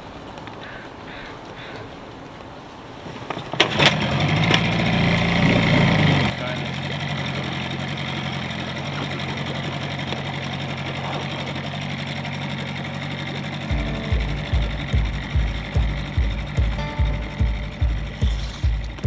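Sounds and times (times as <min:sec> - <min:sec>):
outboard motor running: 0:03.3 - 0:19.0
music with bass beat: 0:13.7 - 0:19.0.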